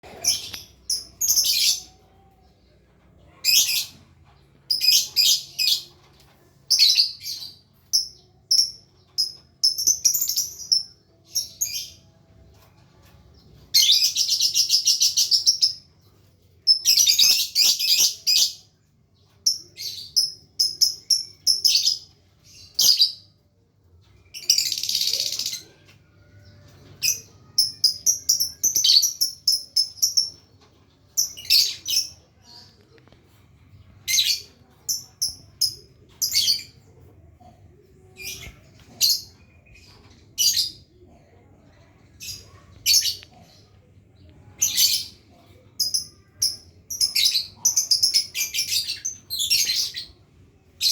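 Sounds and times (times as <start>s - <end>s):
lovebird chirping and chattering: 0.0s - 2.0s, 6.7s - 12.1s, 13.7s - 15.9s, 16.6s - 18.7s, 19.3s - 23.3s, 24.3s - 25.8s, 26.4s - 30.5s, 31.1s - 32.7s, 33.9s - 37.0s, 44.4s - 50.2s.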